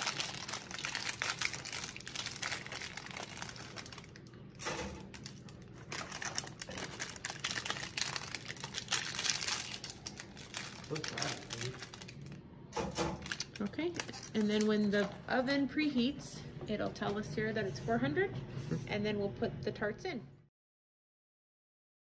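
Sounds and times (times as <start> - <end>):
foil and packaging crinkling: 0.0 - 15.2.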